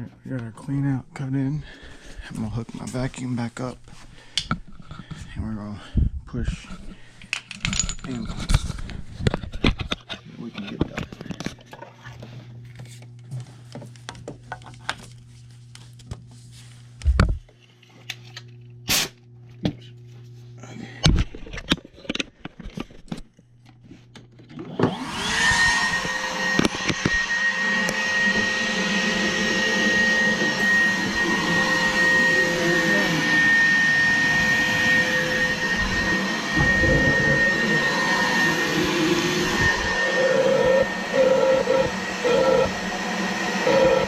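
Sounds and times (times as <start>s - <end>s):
vacuum running with high whine: 24.5s - 44.0s.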